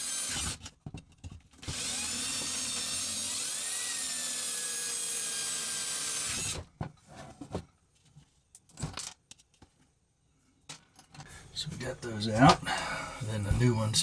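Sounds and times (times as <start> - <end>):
power drill whining: 0.0 - 0.7, 1.6 - 6.7, 11.3 - 14.0.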